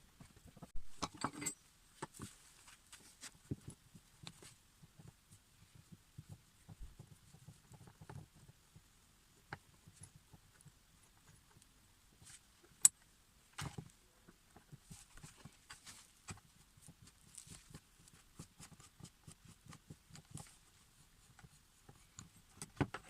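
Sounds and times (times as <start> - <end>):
tools clicking and tapping: 0.9 - 1.6.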